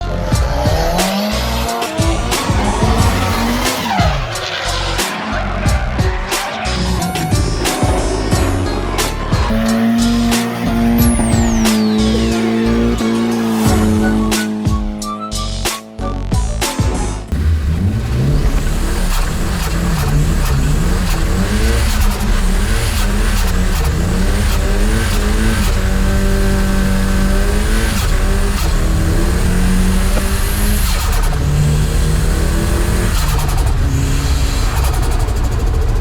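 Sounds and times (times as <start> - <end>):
car engine revving: 0.0 - 36.0.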